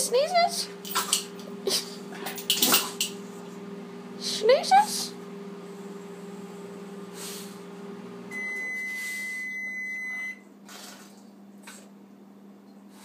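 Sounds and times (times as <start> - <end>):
low appliance hum: 0.0 - 13.0.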